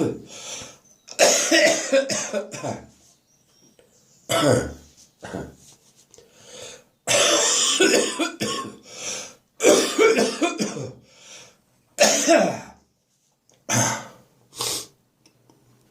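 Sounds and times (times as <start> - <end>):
person coughing deep wet cough: 1.1 - 2.9, 4.3 - 5.6, 7.1 - 8.8, 9.6 - 11.0, 12.0 - 12.8, 13.7 - 14.2.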